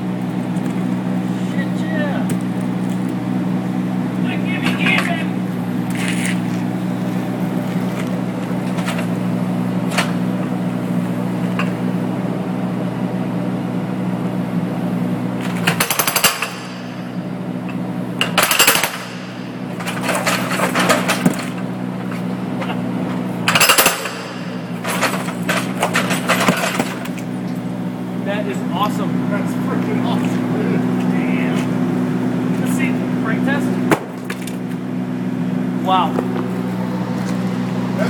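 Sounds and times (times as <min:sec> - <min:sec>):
engine hum: 0:00.0 - 0:38.0
jackhammer hammering: 0:15.4 - 0:17.2, 0:18.2 - 0:22.8, 0:23.4 - 0:27.4.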